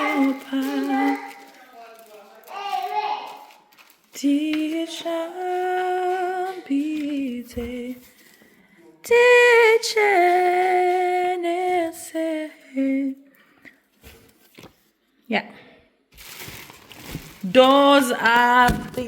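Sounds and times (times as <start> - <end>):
woman singing slow melody: 4.2 - 8.1, 9.0 - 13.3.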